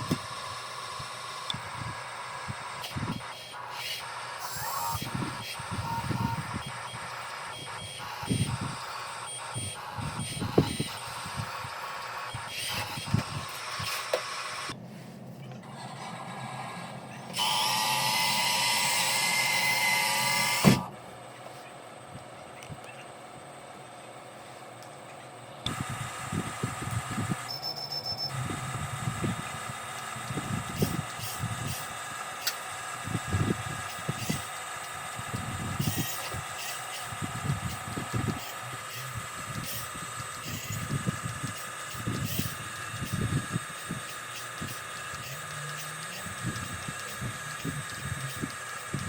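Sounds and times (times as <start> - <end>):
electric motor and gearbox whining: 0.0 - 14.8, 15.4 - 21.0, 25.6 - 49.0
sharp clicks: 33.8 - 49.0.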